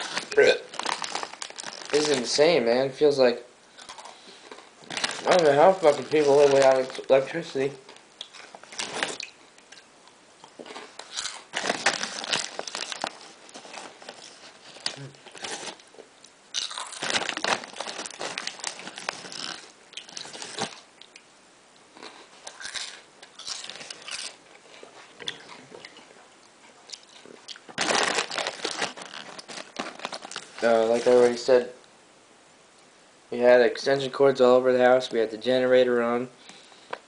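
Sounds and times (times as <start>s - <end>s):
potato chips crunching: 0.0s - 2.6s, 3.8s - 21.2s, 21.9s - 26.0s, 26.9s - 31.4s
chip bag crinkling: 0.0s - 9.8s, 10.6s - 20.9s, 21.9s - 26.0s, 27.0s - 31.6s.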